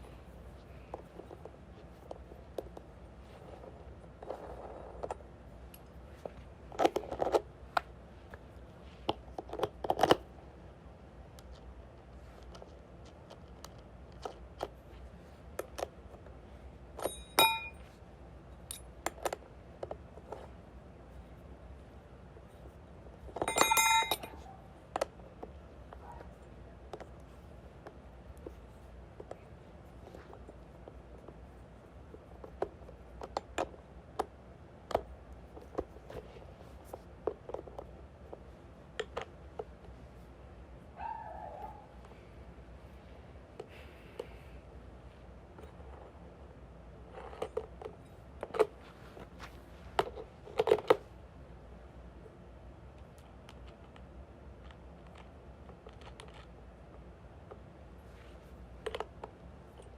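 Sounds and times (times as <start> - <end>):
ringing metallic clink: 17.0 - 17.8, 23.4 - 24.5
objects clicking and tapping: 23.2 - 28.6
dog whine: 41.0 - 42.0.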